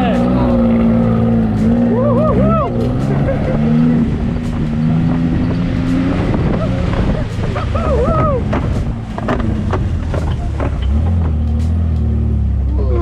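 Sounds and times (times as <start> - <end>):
vehicle engine rumble: 0.0 - 13.0
wind buffeting microphone: 0.0 - 13.0
person shouting: 1.8 - 2.8, 7.7 - 8.5
knocks and rattles from bumps: 8.3 - 12.2.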